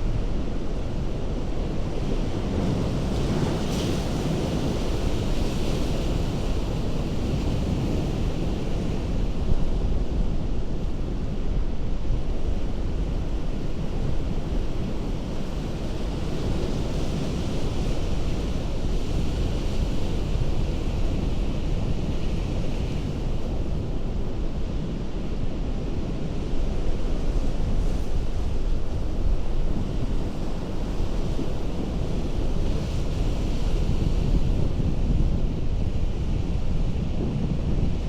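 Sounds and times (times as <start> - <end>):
wind on microphone: 0.0 - 38.0.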